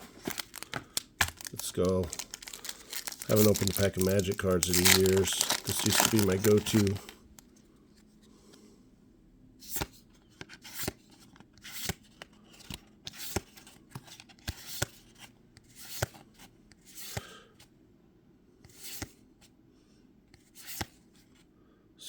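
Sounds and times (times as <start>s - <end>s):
trading cards swishing and clicking: 0.2s - 7.2s.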